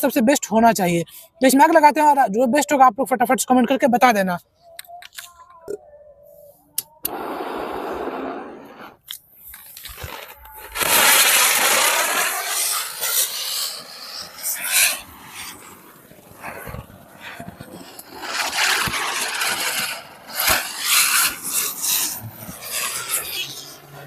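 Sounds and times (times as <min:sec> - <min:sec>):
firework fuse fizzing: 0:07.0 - 0:24.0
spinner firework hissing sparks: 0:07.0 - 0:24.0.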